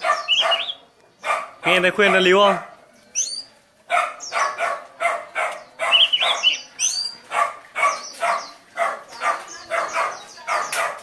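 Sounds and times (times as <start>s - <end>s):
bird warbling whistles and trills: 0.0s - 0.9s, 3.0s - 4.6s, 5.8s - 10.8s
dog barking: 0.0s - 2.9s, 3.9s - 6.6s, 7.2s - 11.0s.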